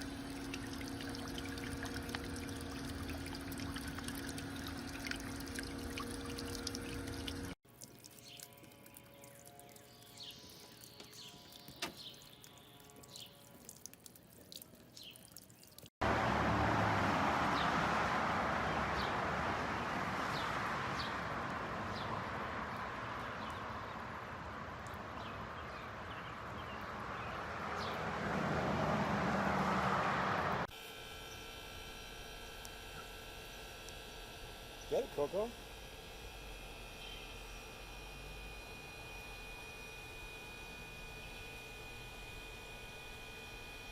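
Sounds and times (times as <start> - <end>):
fountain water splashing: 0.0 - 8.4.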